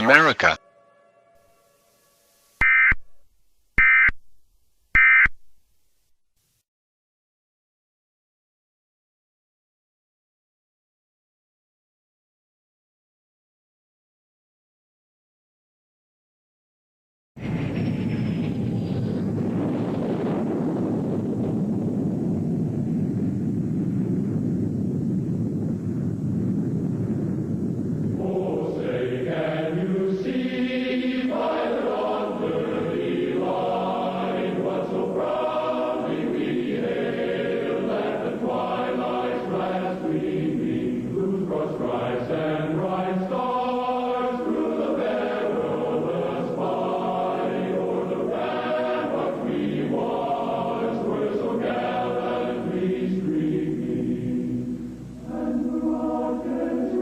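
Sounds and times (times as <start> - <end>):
low rumbling: 17.4 - 30.2
choir singing held notes: 28.1 - 57.0.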